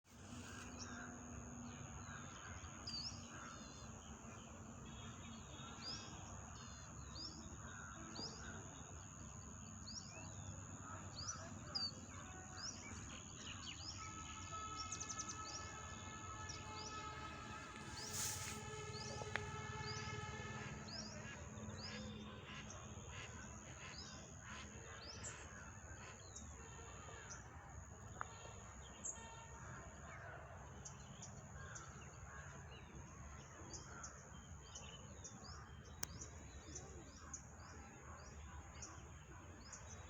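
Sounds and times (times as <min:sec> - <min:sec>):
high-pitched insect drone: 0:12.1 - 0:22.8
insect buzzing close by: 0:13.5 - 0:25.6
brief hiss: 0:17.5 - 0:19.2.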